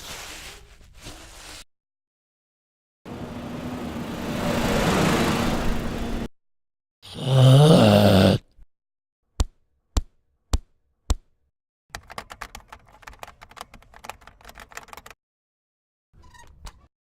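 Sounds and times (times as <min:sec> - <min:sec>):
rapid irregular clicking: 0:11.9 - 0:15.2.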